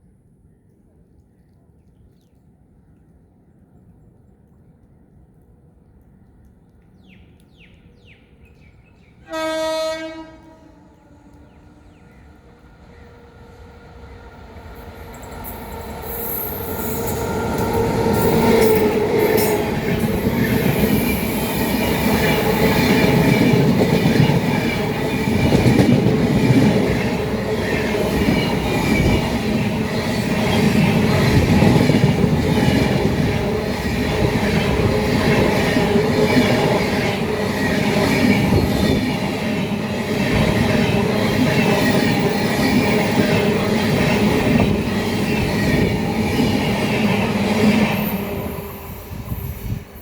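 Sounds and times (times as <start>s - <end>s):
locomotive horn blast: 9.3s - 11.9s
train wheels clattering on track: 14.8s - 49.8s.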